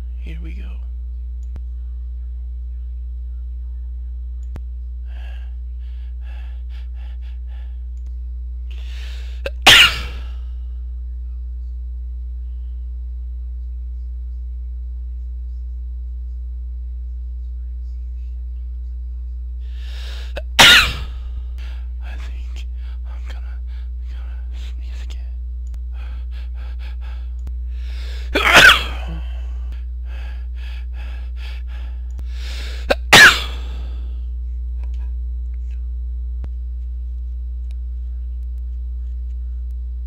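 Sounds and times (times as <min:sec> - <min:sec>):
catching breaths: 0:05.0 - 0:07.9, 0:08.7 - 0:09.4, 0:25.8 - 0:28.4, 0:29.1 - 0:32.9
man sneezing: 0:09.4 - 0:10.4, 0:20.2 - 0:21.2, 0:28.3 - 0:29.4, 0:32.8 - 0:33.9.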